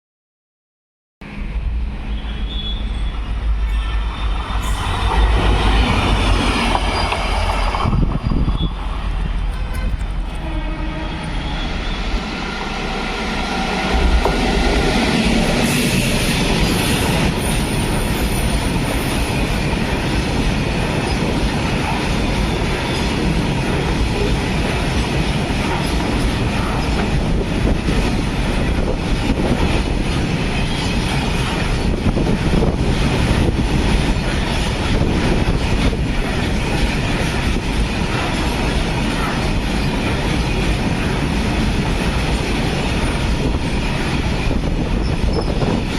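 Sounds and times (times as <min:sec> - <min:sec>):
train rumbling past: 0:01.2 - 0:45.9.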